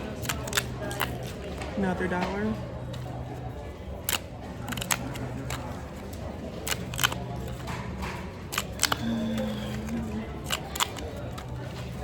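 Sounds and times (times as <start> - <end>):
paper tickets tearing: 0.0 - 1.5, 3.9 - 12.0.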